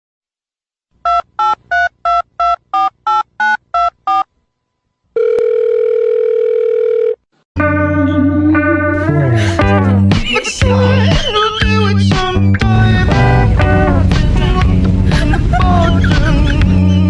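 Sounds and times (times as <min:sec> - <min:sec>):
steady phone tone: 0:05.2 - 0:07.2
music: 0:07.6 - 0:17.0.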